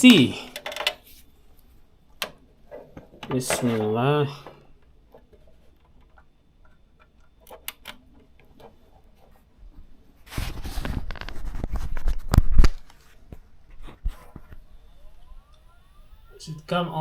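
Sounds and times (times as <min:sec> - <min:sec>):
rustling and bumping: 0:02.2 - 0:14.7.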